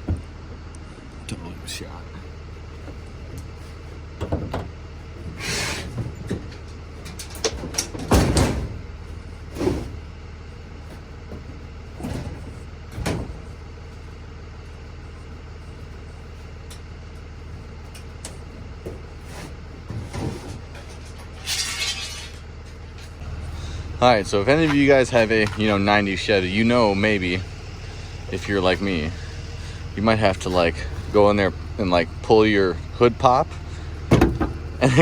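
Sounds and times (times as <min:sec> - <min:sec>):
steady low hum: 0:00.0 - 0:35.0
metallic clunks and knocks: 0:04.2 - 0:10.0, 0:10.8 - 0:13.6, 0:33.5 - 0:35.0
metal scrape: 0:19.1 - 0:22.4.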